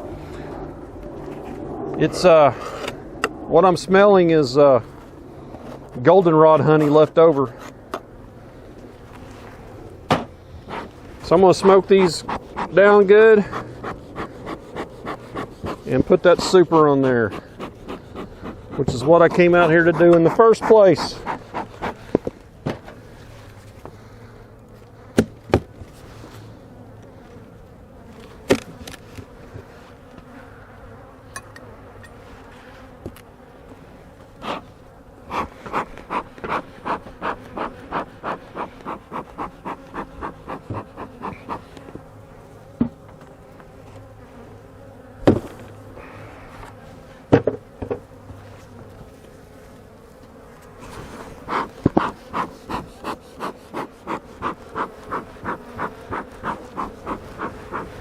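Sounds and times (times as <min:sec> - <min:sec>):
bee smoker bellows puffing: 0:00.0 - 0:07.9, 0:09.0 - 0:27.5, 0:34.0 - 0:58.0
bees humming: 0:00.0 - 0:58.0
knock of wooden hive parts: 0:10.1 - 0:10.8, 0:25.1 - 0:25.9, 0:28.4 - 0:28.9, 0:45.2 - 0:45.6, 0:47.3 - 0:48.2, 0:51.5 - 0:54.9.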